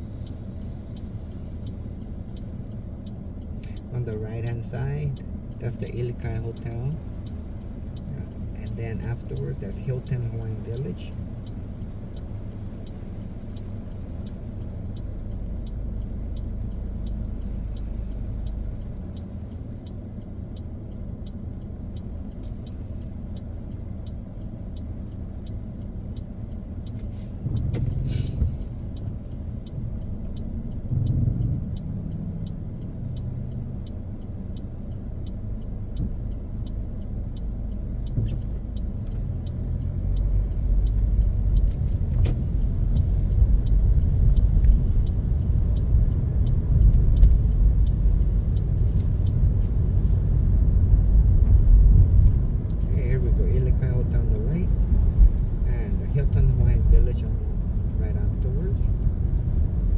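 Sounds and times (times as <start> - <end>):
car road and engine rumble: 0.0 - 59.9
faint regular ticking: 0.0 - 59.9.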